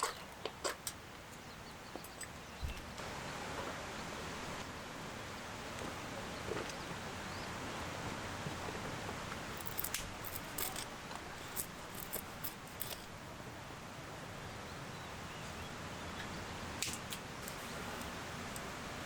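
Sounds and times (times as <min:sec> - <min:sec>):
steady low hiss: 0:00.0 - 0:19.0
sharp clicks and snips: 0:09.6 - 0:10.9.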